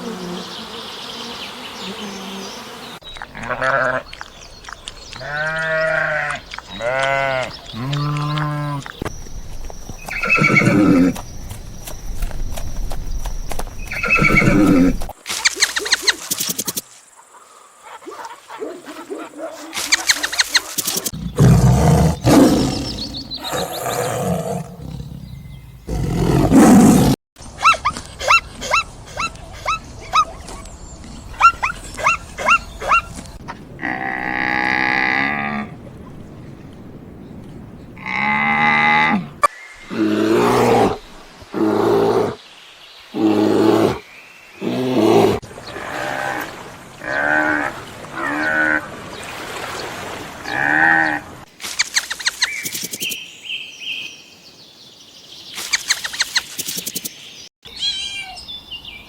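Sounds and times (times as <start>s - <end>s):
animal roaring: 21.2s - 27.2s, 38.0s - 42.4s, 44.6s - 48.8s
quick high chirps: 55.6s - 57.2s.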